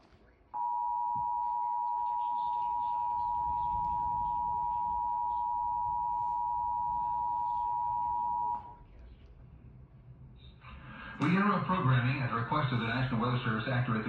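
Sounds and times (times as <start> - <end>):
two-tone alert alarm: 0.6 - 8.7.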